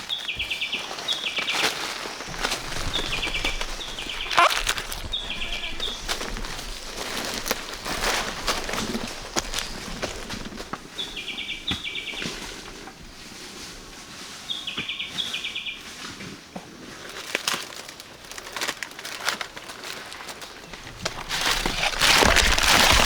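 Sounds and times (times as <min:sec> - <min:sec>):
small bird calling: 0:00.1 - 0:10.2
rustling and clicks: 0:00.4 - 0:10.9, 0:17.1 - 0:23.0.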